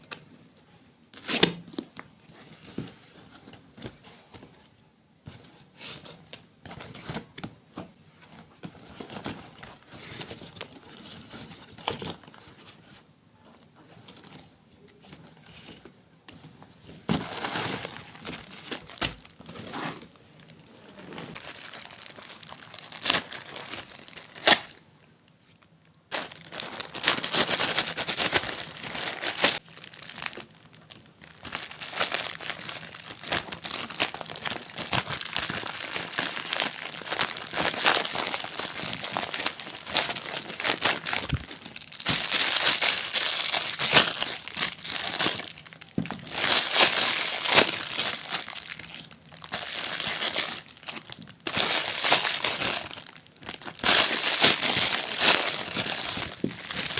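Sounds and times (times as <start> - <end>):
plastic wrappers crinkling: 17.1 - 56.9.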